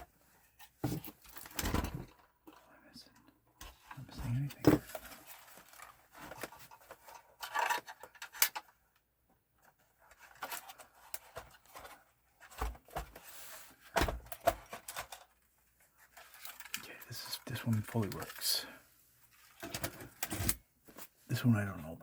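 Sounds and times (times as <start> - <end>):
plastic parts clicking and rubbing: 3.6 - 8.8, 9.6 - 18.7, 19.3 - 21.1.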